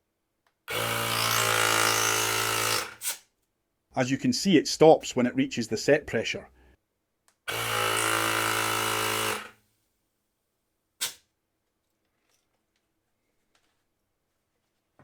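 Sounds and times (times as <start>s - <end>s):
compressor motor buzzing: 0.7s - 3.0s, 7.5s - 9.5s.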